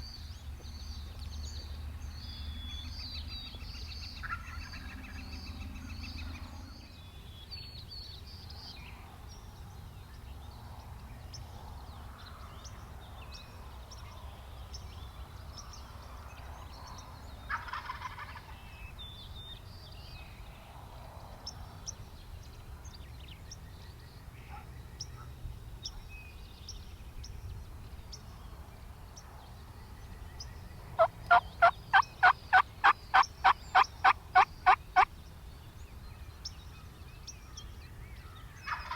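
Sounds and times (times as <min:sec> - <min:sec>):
outdoor background: 0:00.0 - 0:38.9
songbird chirps: 0:21.4 - 0:38.9.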